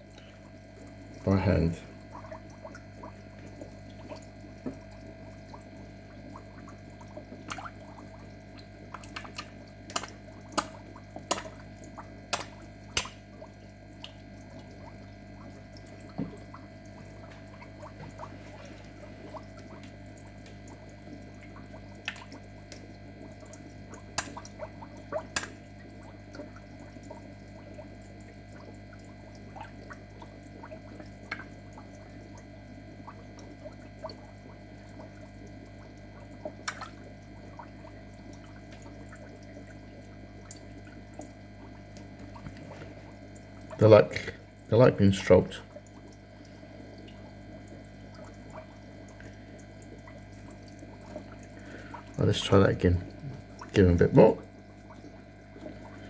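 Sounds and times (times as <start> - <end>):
water splashes and drips: 0.0 - 56.0.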